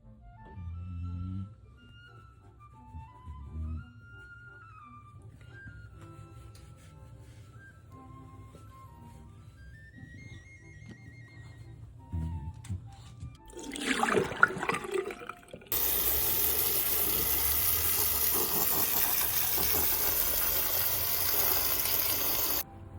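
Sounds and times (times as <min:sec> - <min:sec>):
water running: 0:13.4 - 0:22.6.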